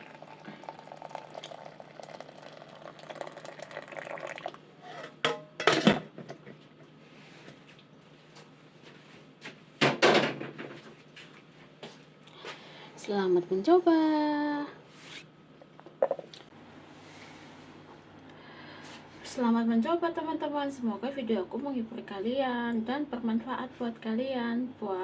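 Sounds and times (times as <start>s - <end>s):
liquid pouring into a bowl: 0.0s - 4.6s.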